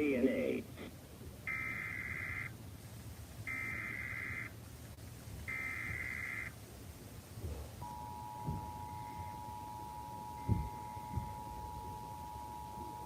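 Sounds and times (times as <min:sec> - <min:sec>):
two-tone attention signal: 0:07.8 - 0:13.0.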